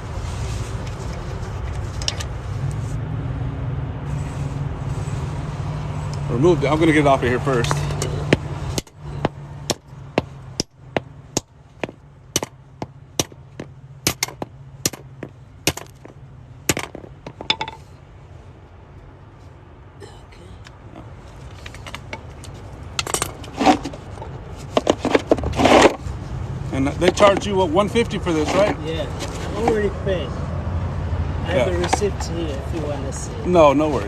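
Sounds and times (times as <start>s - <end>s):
metal-on-metal tapping: 7.6s - 17.8s
scraping knocks: 7.6s - 17.9s.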